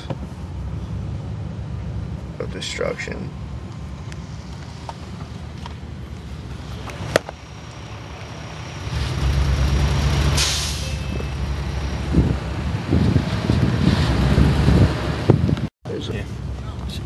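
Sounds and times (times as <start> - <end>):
motor vehicle rumble: 0.0 - 17.0
short sharp hiss: 10.4 - 11.0.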